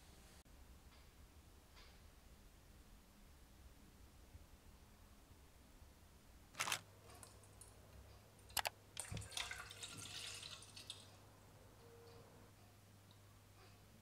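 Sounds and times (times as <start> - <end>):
water dripping and splashing: 9.0 - 11.2.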